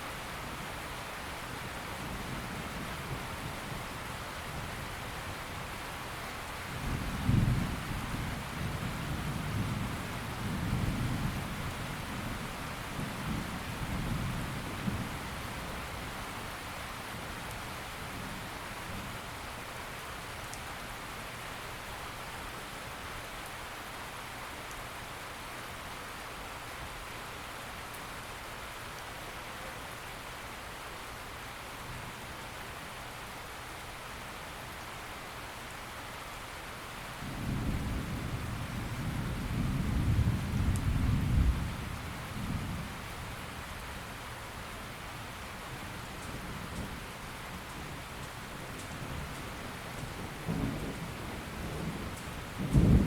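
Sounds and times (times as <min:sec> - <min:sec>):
steady rain falling: 0:00.0 - 0:53.0
low rumble of thunder: 0:06.7 - 0:16.2, 0:37.2 - 0:43.9, 0:45.7 - 0:53.0.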